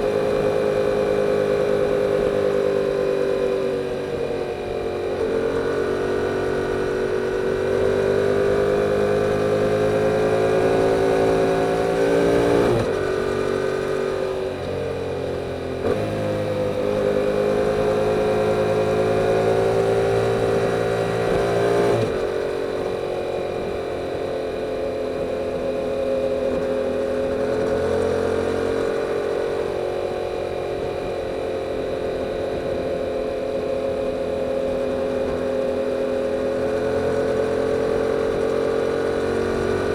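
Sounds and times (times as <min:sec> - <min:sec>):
motorcycle engine revving: 0:00.0 - 0:39.9.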